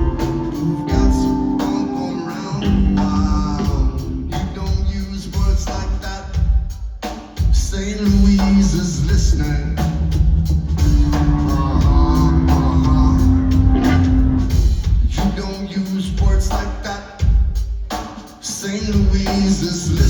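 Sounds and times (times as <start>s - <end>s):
person singing: 0.0s - 6.4s, 11.0s - 17.2s, 18.5s - 20.0s
live rock band: 0.0s - 20.0s.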